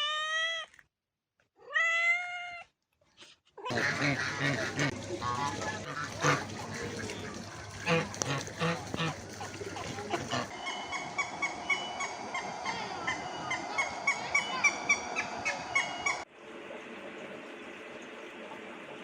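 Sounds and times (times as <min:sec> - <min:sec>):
flock of birds calling: 0:03.7 - 0:16.2.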